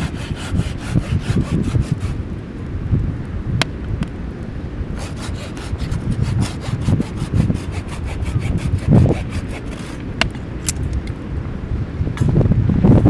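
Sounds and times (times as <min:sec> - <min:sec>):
hand saw cutting wood: 0:00.0 - 0:02.2, 0:05.0 - 0:11.0
wind rumble on microphone: 0:00.0 - 0:13.0.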